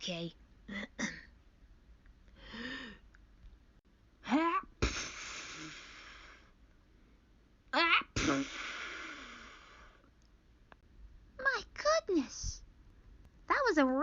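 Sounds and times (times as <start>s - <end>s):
woman sneezing: 4.3s - 6.0s, 7.8s - 9.4s.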